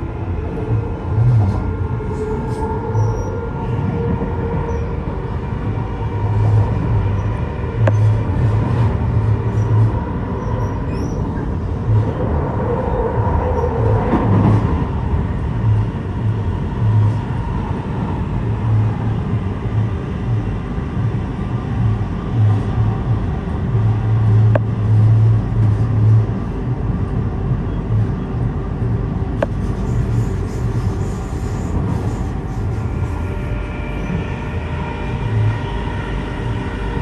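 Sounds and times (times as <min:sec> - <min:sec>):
train rumbling: 0:00.0 - 0:37.0
whining tones: 0:27.7 - 0:37.0.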